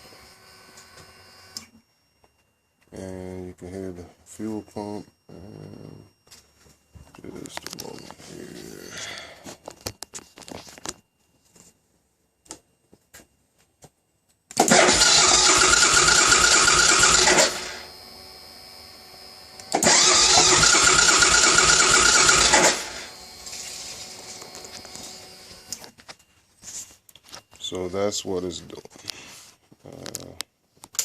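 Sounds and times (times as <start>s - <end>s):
quiet steady hum: 0.0s - 14.6s, 17.1s - 20.4s
motorcycle engine cranking on starter: 14.5s - 17.8s, 19.7s - 23.1s.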